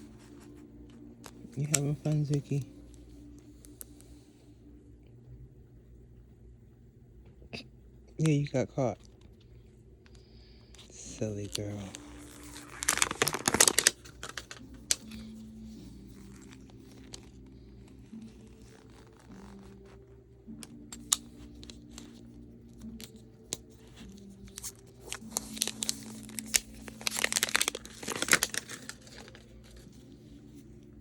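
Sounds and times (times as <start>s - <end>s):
paper tearing and crumpling: 11.3s - 15.4s, 24.0s - 29.9s.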